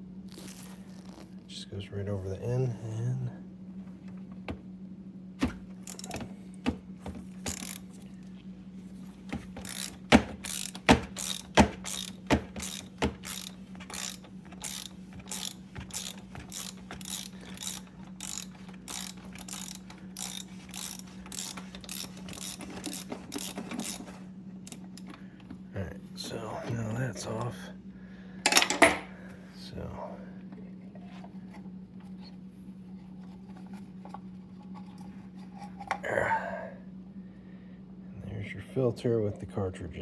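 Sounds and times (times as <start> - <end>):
socket ratchet clicking: 5.8 - 6.2, 7.4 - 7.9, 9.6 - 24.1.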